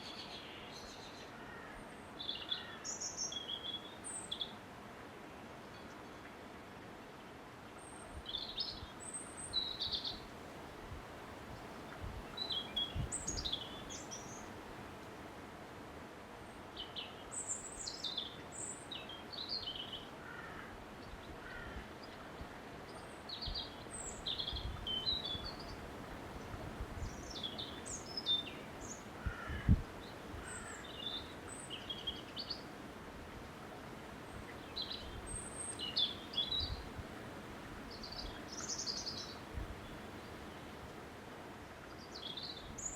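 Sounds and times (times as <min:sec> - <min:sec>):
background hiss: 0:00.0 - 0:42.9
small birds chirping: 0:11.6 - 0:14.5, 0:22.8 - 0:32.7, 0:34.2 - 0:37.0, 0:37.9 - 0:40.8.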